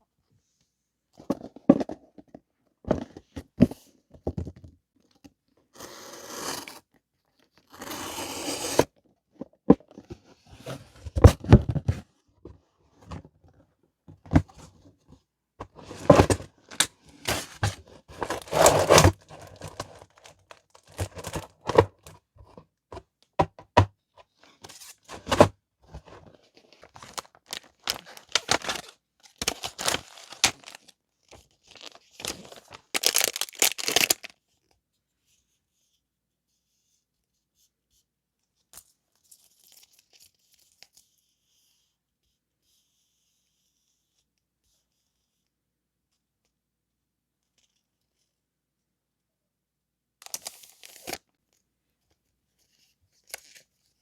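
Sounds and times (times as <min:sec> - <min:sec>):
paper and plastic crinkling: 0:15.8 - 0:21.8, 0:25.1 - 0:34.3.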